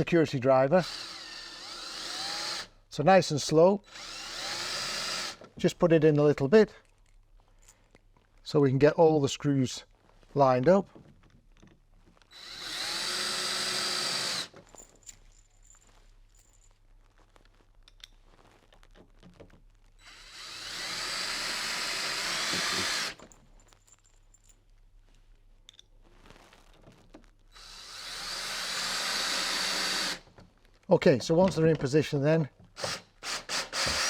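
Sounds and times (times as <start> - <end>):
power drill driving screws: 0.6 - 2.8, 3.8 - 5.5, 12.3 - 14.6, 20.0 - 23.3, 27.5 - 30.3, 32.8 - 34.0.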